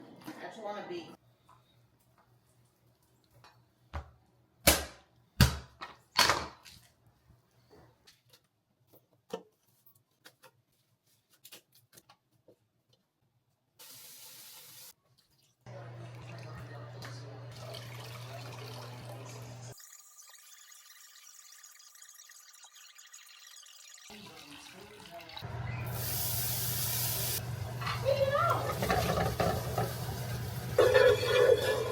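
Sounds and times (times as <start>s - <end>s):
faucet running into sink: 15.8s - 31.8s.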